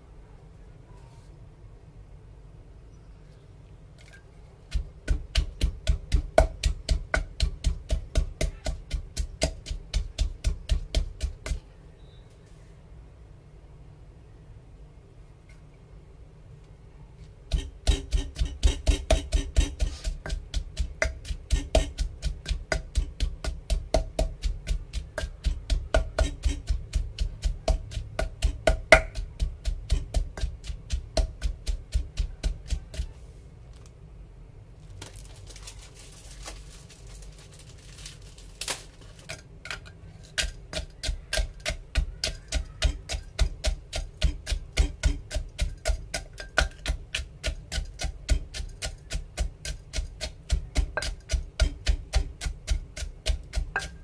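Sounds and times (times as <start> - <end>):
knife chopping on cutting board: 4.7 - 11.6, 17.5 - 33.1, 40.4 - 54.0.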